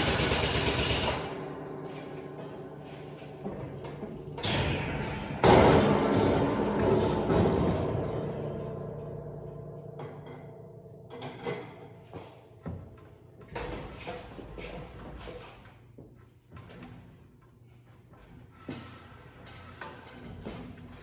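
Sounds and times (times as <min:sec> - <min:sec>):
heavy metallic thud ringing: 0:00.5 - 0:11.8.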